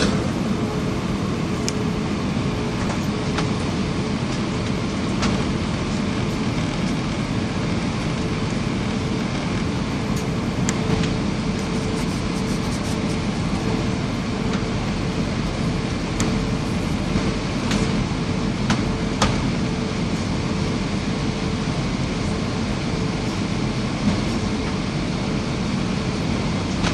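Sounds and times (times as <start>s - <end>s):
airliner engine and airflow rush: 0.0s - 26.9s.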